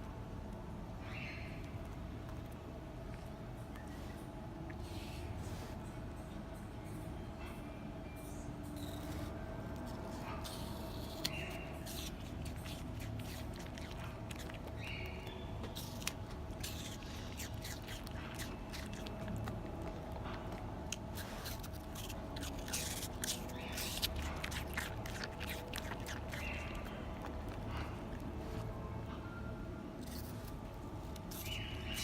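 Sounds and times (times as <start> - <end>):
steady low hum: 0.0 - 32.0
animal chewing apple: 8.8 - 32.0.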